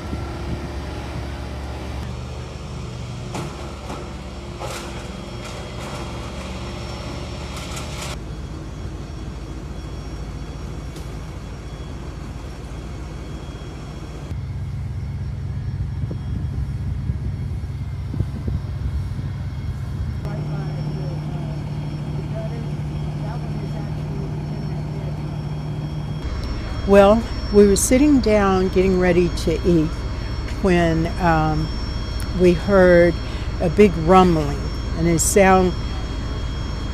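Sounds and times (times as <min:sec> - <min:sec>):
steady low rumble: 0:14.3 - 0:36.9.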